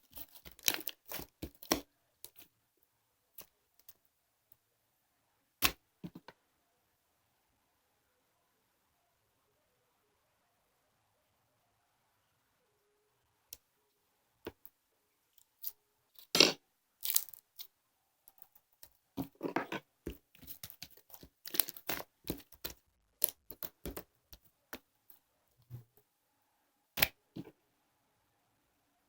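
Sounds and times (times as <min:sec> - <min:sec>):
handling rustles and crinkles: 0:00.0 - 0:02.5, 0:17.0 - 0:17.7, 0:18.3 - 0:24.9.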